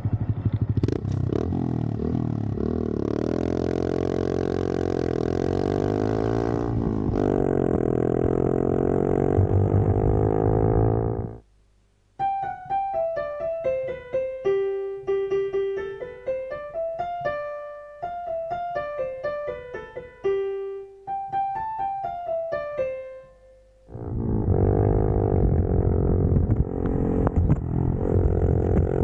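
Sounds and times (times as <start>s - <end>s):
solo piano melody: 12.2s - 24.2s
low drone: 23.9s - 29.0s.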